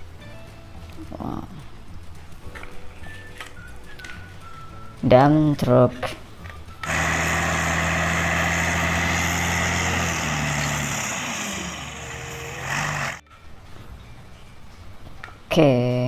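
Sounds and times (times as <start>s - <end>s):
truck engine running: 6.8s - 13.2s.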